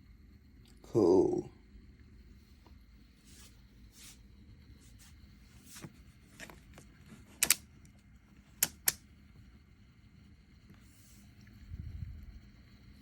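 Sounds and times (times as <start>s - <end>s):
low steady hum: 0.0s - 13.0s
sharp clicks: 7.3s - 7.6s, 8.6s - 9.0s.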